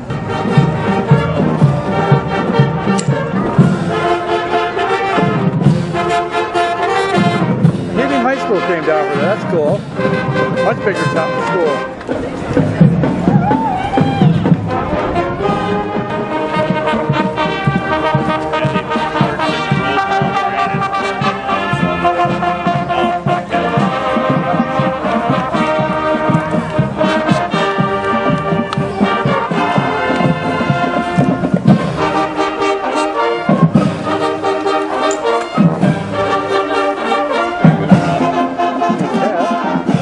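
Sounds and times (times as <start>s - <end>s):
brass instruments: 0.0s - 40.0s
drums beating: 0.0s - 40.0s.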